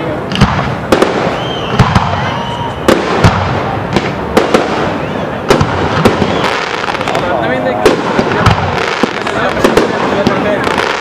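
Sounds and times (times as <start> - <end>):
high firework whistle: 0.9 - 3.8, 4.4 - 7.2.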